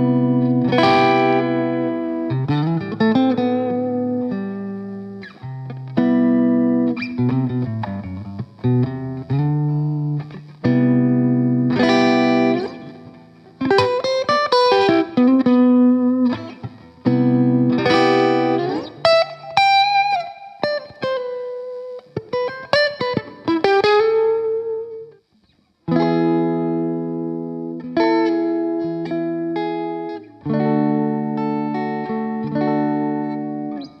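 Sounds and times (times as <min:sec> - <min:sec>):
electric guitar single notes: 0:00.0 - 0:25.2, 0:25.9 - 0:34.0
overdriven electric guitar chords: 0:00.0 - 0:34.0.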